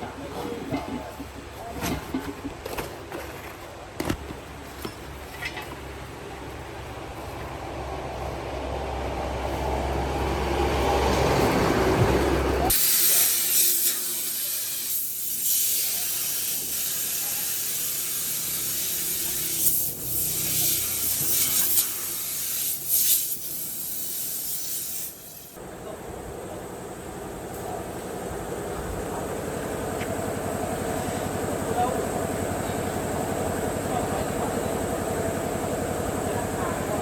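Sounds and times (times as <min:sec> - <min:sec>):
compressed air hissing: 0:12.7 - 0:25.6
low machine rumble: 0:25.6 - 0:37.0.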